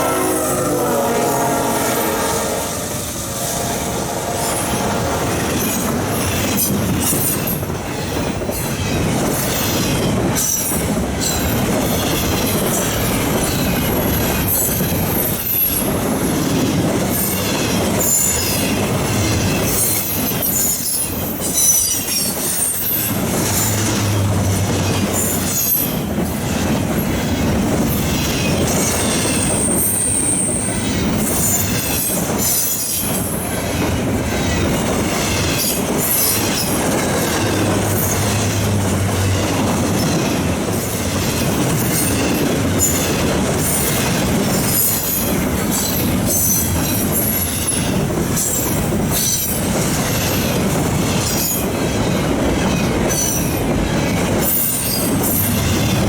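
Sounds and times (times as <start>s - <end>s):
high-pitched wheel squeal: 0.0s - 5.9s
train wheels rumbling on rails: 0.0s - 56.0s.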